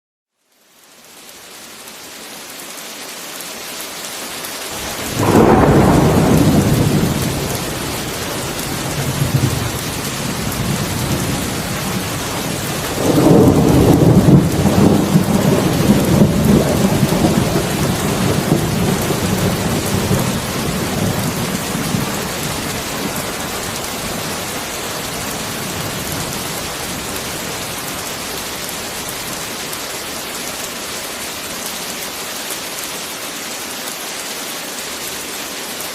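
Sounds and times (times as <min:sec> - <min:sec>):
heavy rain falling: 0:00.5 - 0:35.9
thunder rolling: 0:04.8 - 0:29.9.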